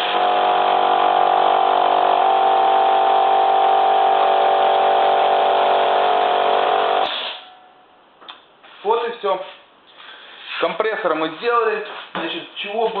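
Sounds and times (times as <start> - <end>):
air compressor running: 0.0 - 7.6.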